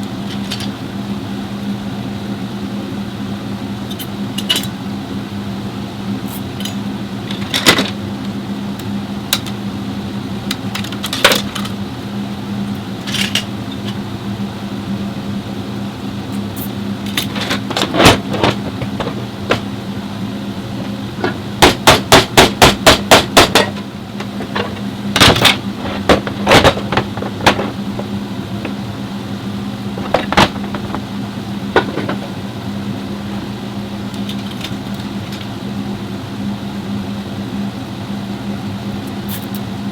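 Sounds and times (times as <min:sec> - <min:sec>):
steady low hum: 0:00.0 - 0:39.9
sharp hammer-like knocks: 0:21.6 - 0:23.8.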